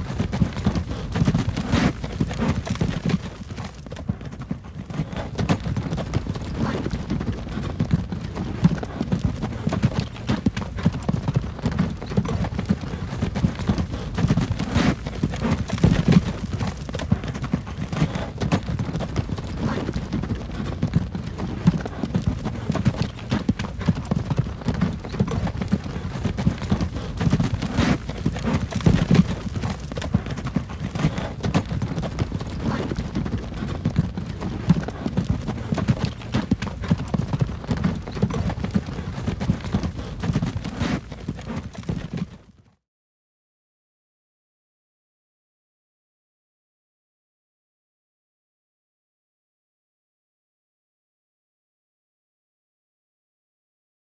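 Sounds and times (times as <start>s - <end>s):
hooves clip-clopping: 0.0s - 42.6s
wagon wheels rumbling: 0.1s - 42.4s.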